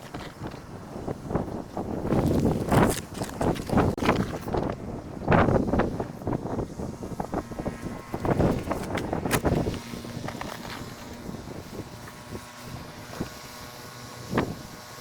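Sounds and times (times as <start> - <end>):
snow shovel crunching and scraping: 0.0 - 1.4, 2.0 - 4.7, 7.8 - 14.5.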